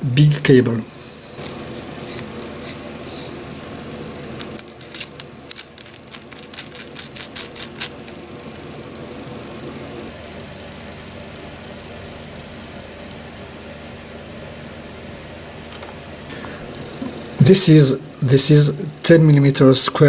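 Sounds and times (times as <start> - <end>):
steady low hum: 0.0 - 20.0
small metal parts clicking: 4.4 - 8.8.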